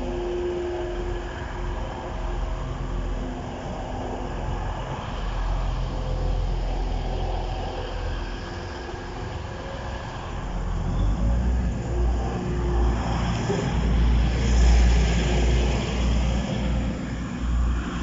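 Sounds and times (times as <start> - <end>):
vehicle engine rumbling: 0.0 - 18.0.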